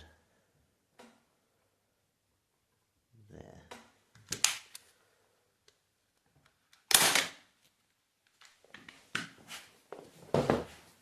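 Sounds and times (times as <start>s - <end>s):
staple gun firing: 6.9s - 7.4s.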